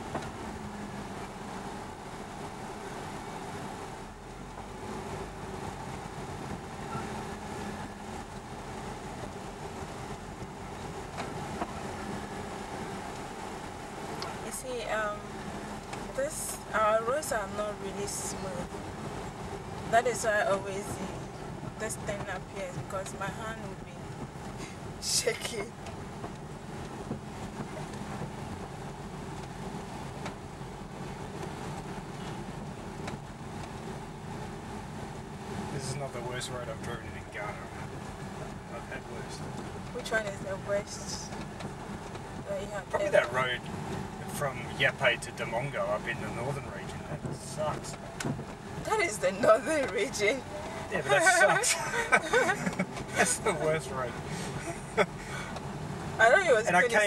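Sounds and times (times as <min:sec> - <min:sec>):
car engine and road noise: 0:00.0 - 0:57.0
light knocks over bumps: 0:24.0 - 0:34.2, 0:47.1 - 0:53.4.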